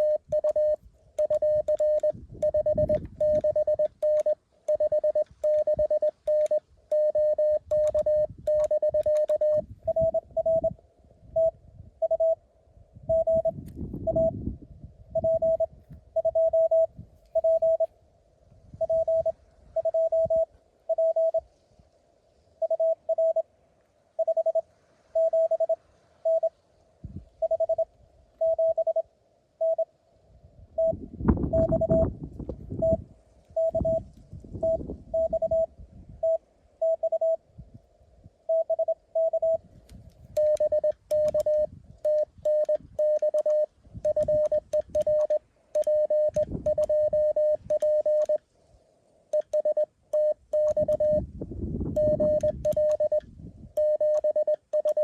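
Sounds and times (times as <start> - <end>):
morse code tones: 0.0 - 12.4, 13.1 - 14.4, 15.1 - 17.9, 18.8 - 21.4, 22.6 - 23.4, 24.2 - 24.6, 25.2 - 26.5, 27.4 - 29.0, 29.6 - 29.9, 30.8 - 32.1, 32.8 - 33.0, 33.6 - 37.4, 38.5 - 39.7, 40.3 - 48.4, 49.3 - 51.3, 51.9 - 55.0.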